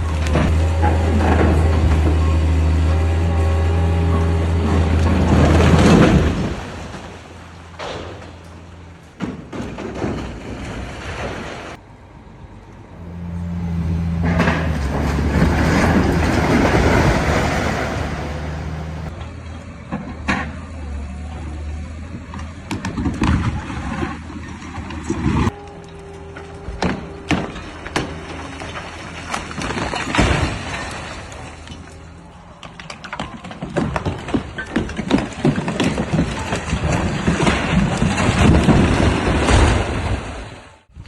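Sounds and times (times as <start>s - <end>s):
masonry collapsing: 0.0s - 11.8s, 13.0s - 20.6s, 22.8s - 41.0s
excavator diesel engine running: 0.0s - 38.6s.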